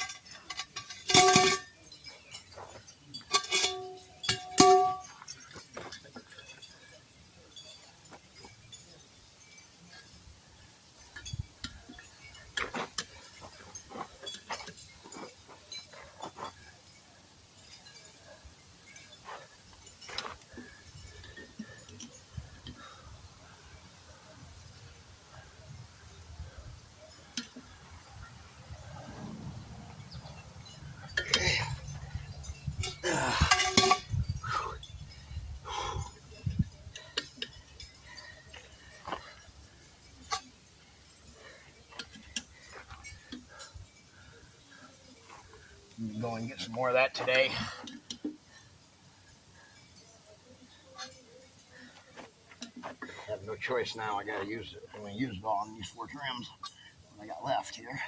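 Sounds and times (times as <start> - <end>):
rattling metal scrape: 0.0 - 8.8, 17.6 - 23.8, 24.4 - 48.8
tools clinking against wheel rims: 0.0 - 58.0.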